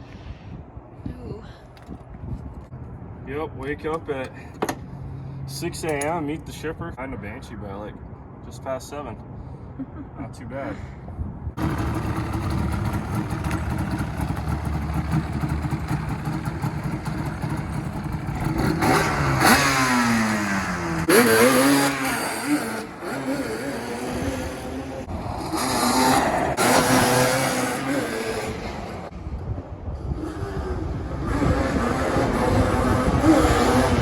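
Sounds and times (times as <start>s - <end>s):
two-stroke engine revving: 11.6s - 29.1s, 30.2s - 34.0s.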